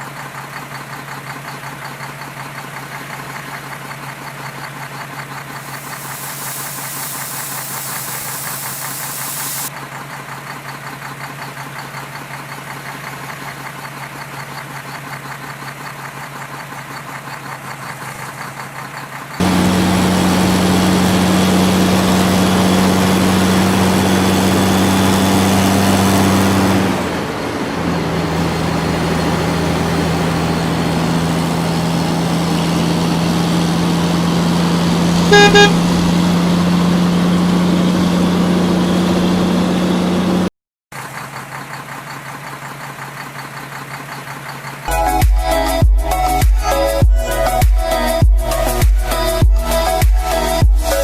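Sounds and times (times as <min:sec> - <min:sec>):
heavy diesel engine running: 0:00.0 - 0:51.0
horn toot: 0:35.3 - 0:36.1.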